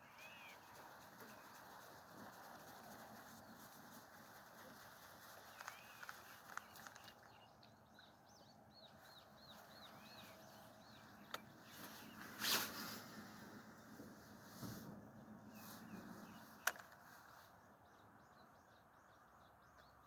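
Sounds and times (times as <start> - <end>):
bird chirping: 0.0 - 1.9, 2.5 - 12.4, 15.5 - 20.0
scattered clicks: 5.4 - 7.4, 16.6 - 17.0
brief noisy swish: 12.3 - 13.0.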